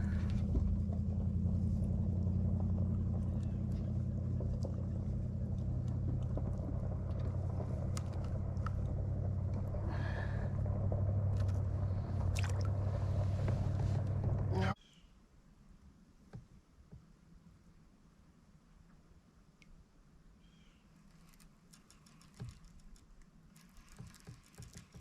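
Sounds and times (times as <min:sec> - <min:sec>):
low motor hum: 0:00.0 - 0:14.8
faint clicks: 0:20.9 - 0:25.0.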